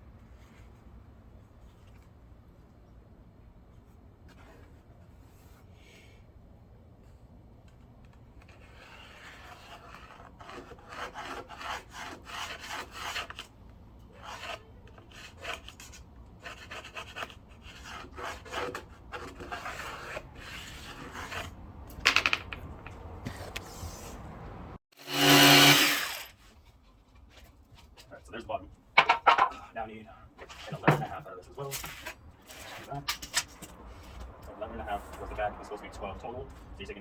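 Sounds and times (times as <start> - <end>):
scraping on wooden board: 14.2 - 22.4.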